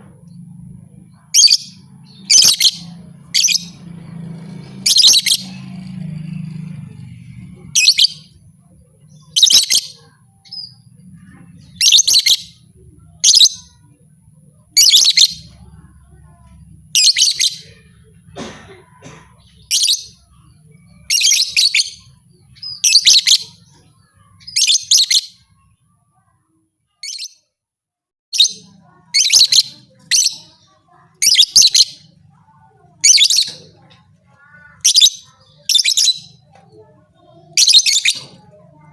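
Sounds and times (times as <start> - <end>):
lovebird chirping: 1.2 - 3.9, 4.6 - 5.7, 9.2 - 10.9, 11.6 - 12.6.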